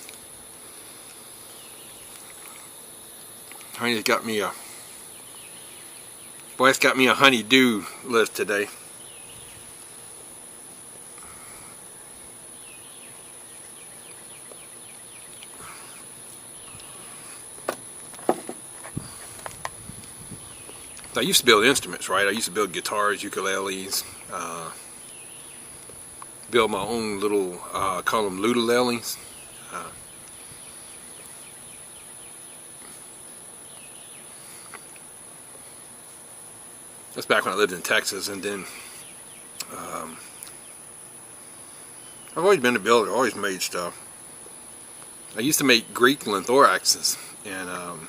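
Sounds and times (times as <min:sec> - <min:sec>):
high-pitched insect drone: 0:00.0 - 0:26.0
faint chirps: 0:00.0 - 0:48.0
sharp clicks and knocks: 0:17.6 - 0:18.6.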